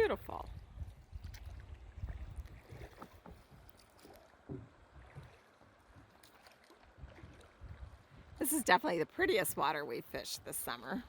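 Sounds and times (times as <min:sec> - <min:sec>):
water splashing against boat: 0:00.0 - 0:11.0
boat hull knocks: 0:02.6 - 0:06.3.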